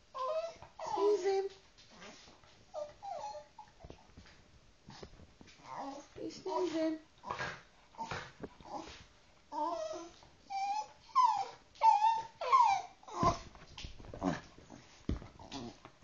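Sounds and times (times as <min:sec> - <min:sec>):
dog whimpering: 0:00.0 - 0:01.4, 0:02.7 - 0:03.9, 0:05.6 - 0:06.1, 0:09.5 - 0:13.5.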